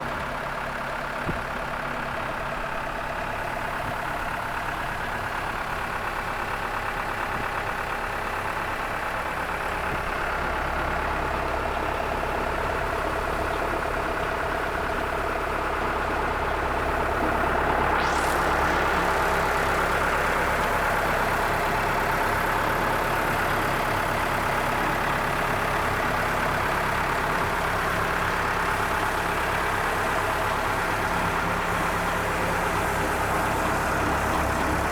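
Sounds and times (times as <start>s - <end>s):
tractor engine running: 0.0s - 34.9s
short rising whine: 16.6s - 23.5s.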